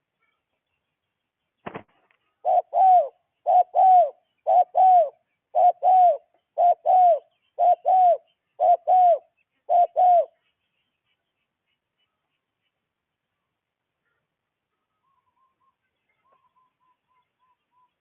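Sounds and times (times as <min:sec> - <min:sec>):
bird calling: 0:01.6 - 0:12.8.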